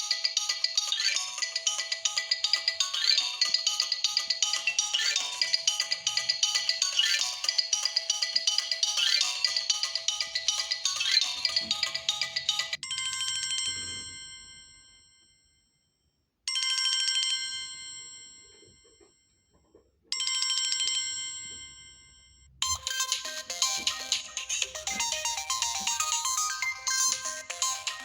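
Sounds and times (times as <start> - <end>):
ringtone melody: 0.0 - 15.0, 20.2 - 28.0.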